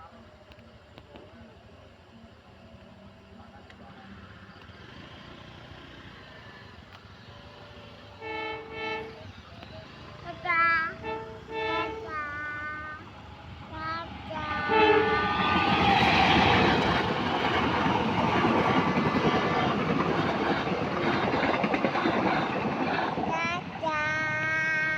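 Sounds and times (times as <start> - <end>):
train passing close by: 1.6 - 24.9
train horn tones: 8.2 - 9.4, 10.9 - 13.0, 14.4 - 16.6.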